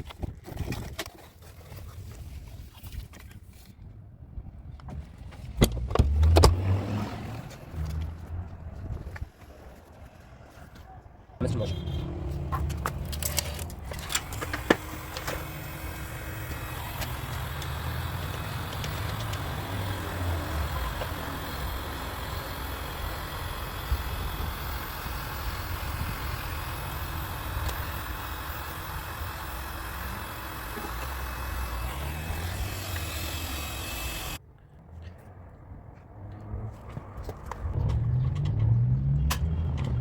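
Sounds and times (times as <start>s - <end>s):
engine rumbling: 4.2s - 40.0s
sharp clicks: 12.0s - 34.4s.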